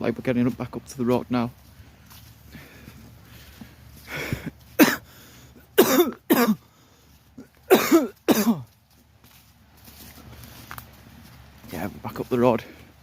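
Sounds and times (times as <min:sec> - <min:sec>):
man coughing: 0:04.1 - 0:06.7, 0:07.4 - 0:08.7.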